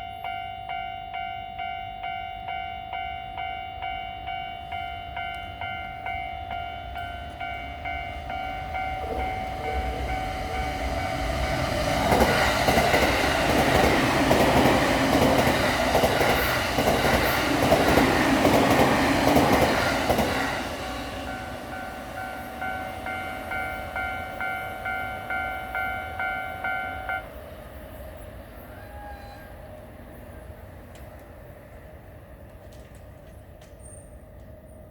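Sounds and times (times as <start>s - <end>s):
level-crossing alarm bell ringing: 0.0s - 14.0s, 20.9s - 27.3s
train wheels clattering over rail joints: 9.2s - 20.6s, 32.5s - 34.5s.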